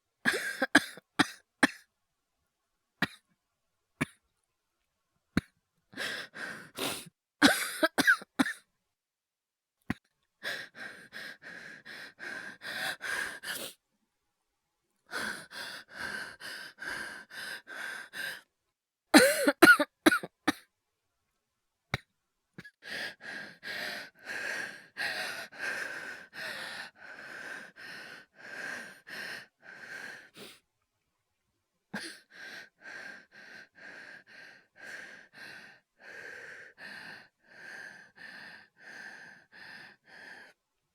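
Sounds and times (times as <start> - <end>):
man coughing: 7.4 - 8.6, 19.2 - 20.2
fast laboured breathing: 10.4 - 13.8, 22.8 - 30.6.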